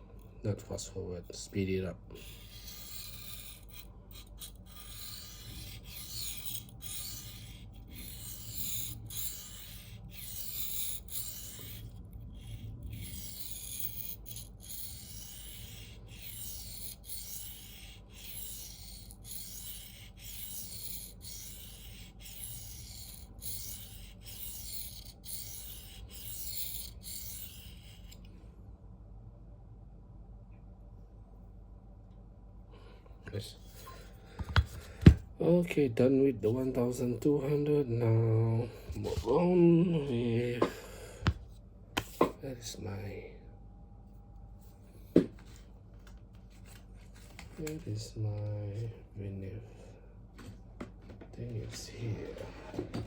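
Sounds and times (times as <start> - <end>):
knife scraping on sharpening plate: 2.2 - 28.2.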